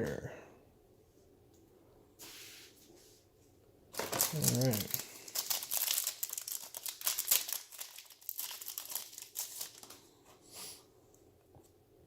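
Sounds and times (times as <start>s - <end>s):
foil wrapper crinkling and tearing: 3.9s - 10.1s.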